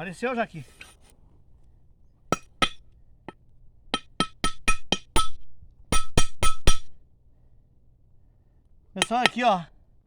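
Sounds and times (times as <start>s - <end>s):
metal struck on metal clinks: 2.3s - 3.4s, 4.0s - 7.0s, 9.0s - 9.5s.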